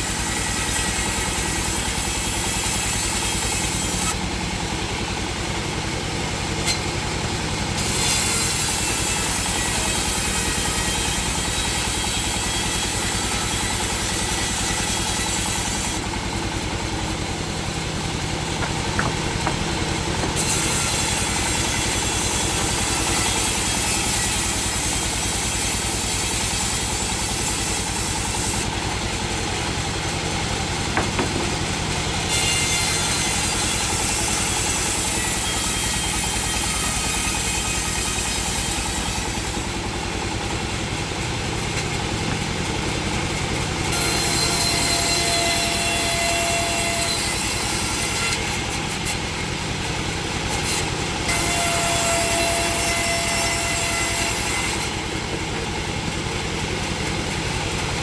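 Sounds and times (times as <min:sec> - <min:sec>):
engine running: 0:00.0 - 0:08.0, 0:12.8 - 0:32.3, 0:38.7 - 0:44.0, 0:54.9 - 0:58.0
saw cutting wood: 0:00.0 - 0:58.0.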